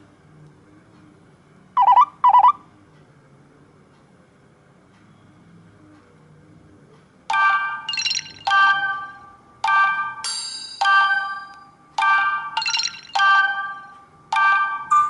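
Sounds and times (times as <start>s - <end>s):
bell-like chime ringtone: 7.4s - 15.0s.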